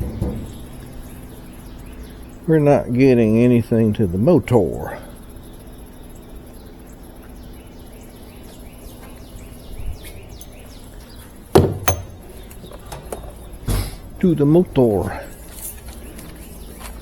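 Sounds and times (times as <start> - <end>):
faint steady hum: 0.0 - 17.0
faint repeated chirping: 5.1 - 13.6
sharp knocks: 11.5 - 12.4.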